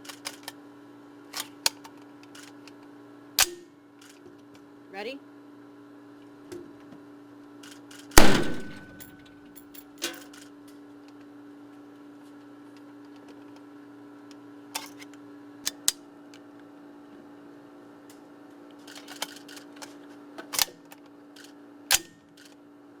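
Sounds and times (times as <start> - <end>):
gunshot echoing in a room: 8.2 - 9.0
steady hum: 8.2 - 9.2.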